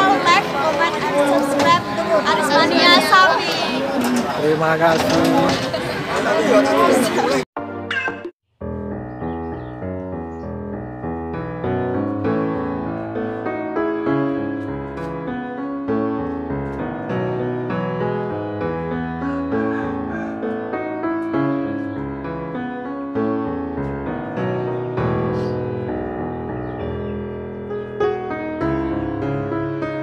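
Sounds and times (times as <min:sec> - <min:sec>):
piano music: 0:07.6 - 0:30.0.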